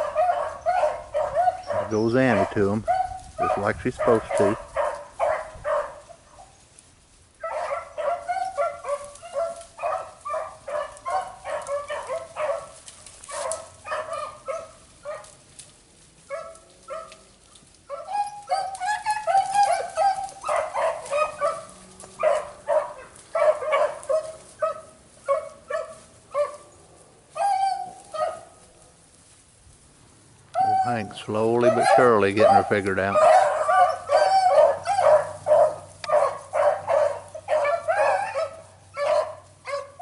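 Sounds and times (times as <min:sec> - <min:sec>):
dogs baying: 0:00.0 - 0:06.6, 0:07.4 - 0:15.5, 0:16.2 - 0:29.0, 0:30.5 - 0:40.0.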